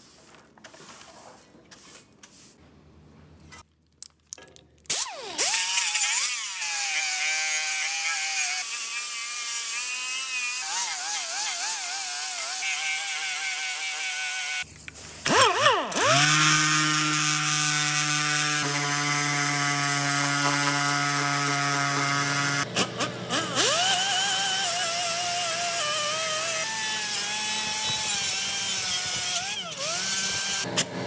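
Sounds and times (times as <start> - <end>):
electric power tool whining: 4.9 - 14.7, 15.3 - 31.0.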